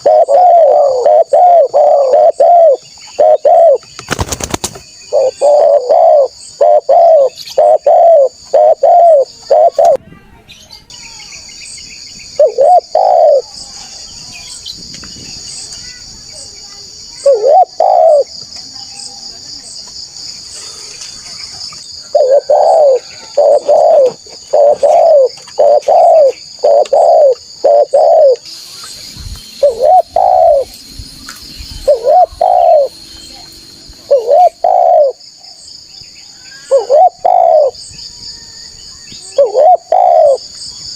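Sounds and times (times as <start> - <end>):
dove cooing: 0.0 - 3.8, 5.1 - 10.0, 12.4 - 13.5, 17.2 - 18.3, 22.0 - 28.4, 29.6 - 30.7, 31.8 - 33.0, 34.0 - 35.2, 36.6 - 37.8, 39.2 - 40.5.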